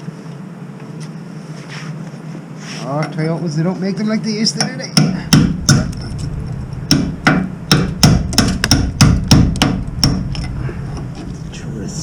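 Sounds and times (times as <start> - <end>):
hammer striking rusty steel: 4.9 - 6.1, 6.8 - 10.6.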